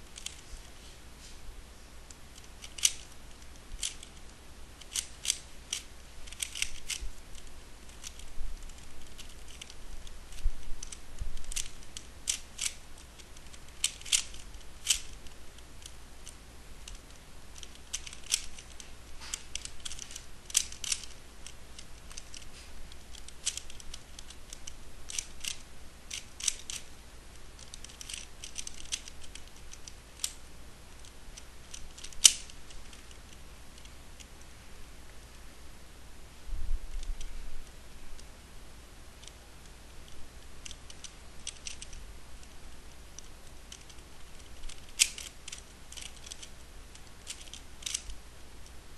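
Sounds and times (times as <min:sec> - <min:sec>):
puzzle cube layers clicking: 0:00.2 - 0:00.4, 0:02.1 - 0:26.9, 0:27.6 - 0:33.9, 0:40.0 - 0:42.6, 0:43.2 - 0:48.2.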